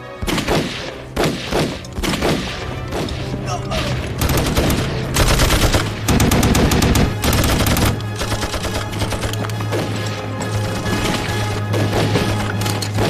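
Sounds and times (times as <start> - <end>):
rapid gunfire: 0.2 - 3.3, 4.2 - 9.9, 10.5 - 13.0.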